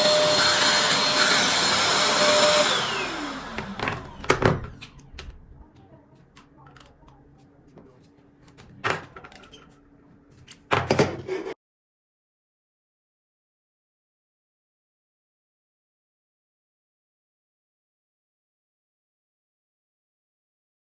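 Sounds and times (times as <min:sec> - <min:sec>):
vacuum cleaner motor spinning down: 0:00.0 - 0:05.4.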